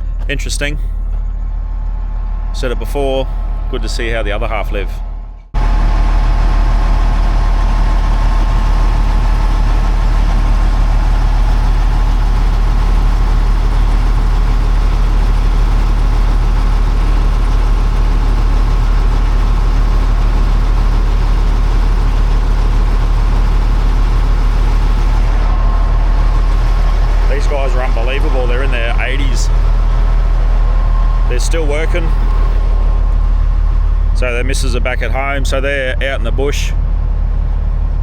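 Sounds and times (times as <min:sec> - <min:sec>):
large engine idling: 0:00.0 - 0:38.0.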